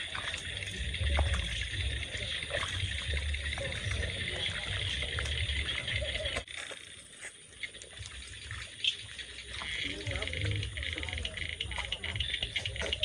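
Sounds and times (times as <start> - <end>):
wind rumble on microphone: 0.0 - 6.4.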